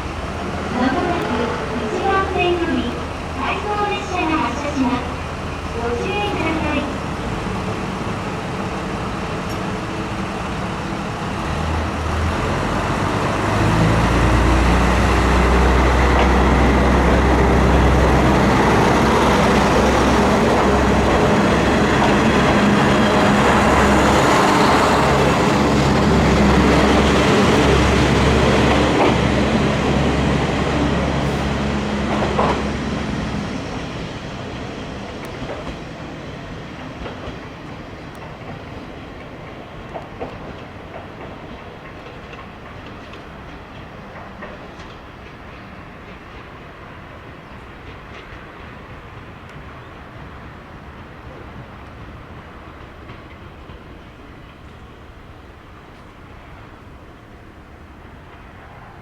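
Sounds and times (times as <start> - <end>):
diesel railcar engine drone: 0.0 - 59.0
train wheels on rails: 0.0 - 59.0.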